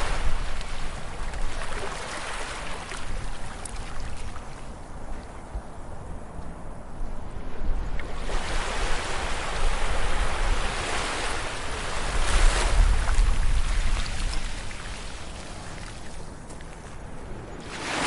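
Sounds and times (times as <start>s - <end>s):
ocean wave breaking on beach: 17.6s - 18.0s.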